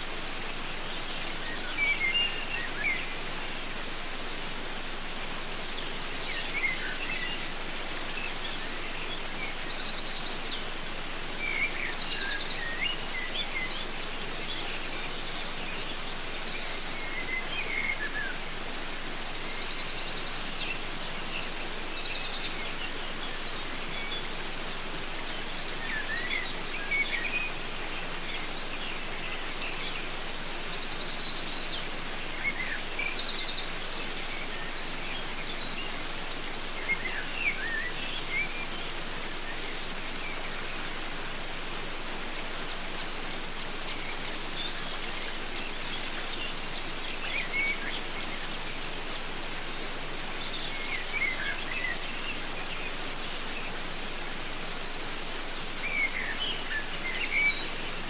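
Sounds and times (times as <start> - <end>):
waterfall rushing: 0.0 - 58.0.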